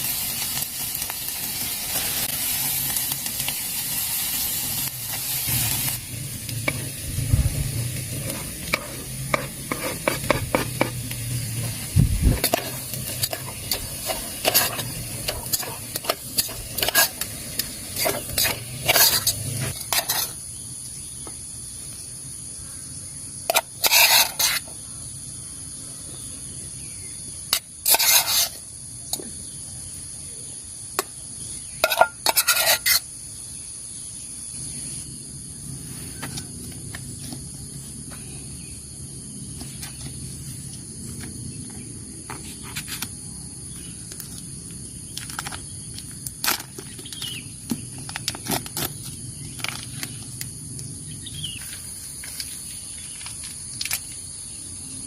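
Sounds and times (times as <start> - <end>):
food sizzling in a pan: 0.0 - 20.4
utensil scraping a pan: 4.8 - 20.4, 23.5 - 24.7, 27.5 - 28.6, 31.8 - 33.1.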